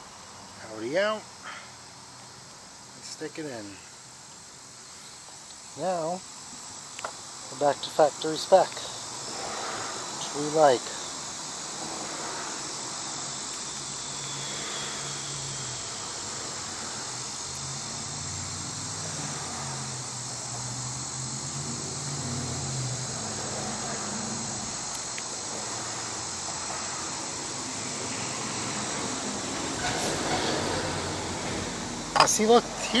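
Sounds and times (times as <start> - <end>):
insects trilling: 0.0 - 33.0.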